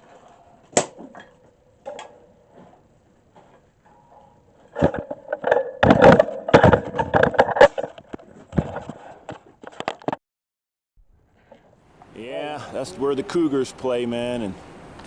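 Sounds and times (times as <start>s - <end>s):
folding bed frame clattering: 3.5s - 9.1s.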